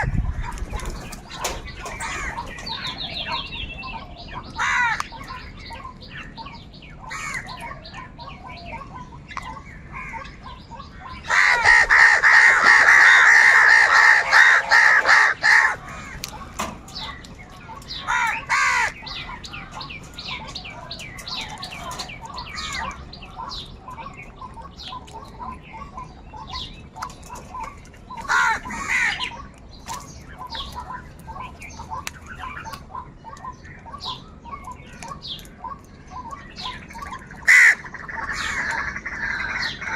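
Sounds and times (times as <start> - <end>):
faint bird calls: 0.0 - 39.9
crows cawing: 1.8 - 3.0, 4.6 - 5.6, 7.0 - 7.6, 11.2 - 20.5, 21.5 - 23.6, 28.1 - 29.5, 36.9 - 39.9.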